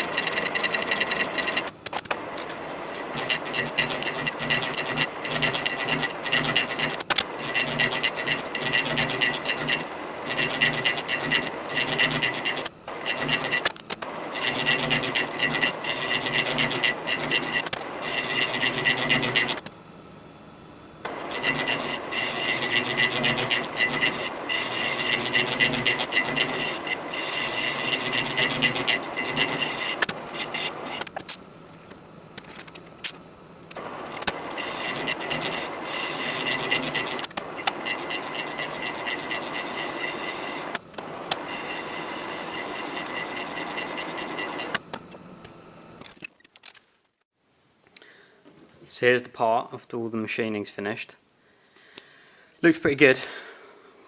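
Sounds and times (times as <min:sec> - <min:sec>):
file rasping on steel: 0:00.0 - 0:01.7, 0:02.5 - 0:19.7, 0:21.1 - 0:31.1, 0:33.7 - 0:44.8.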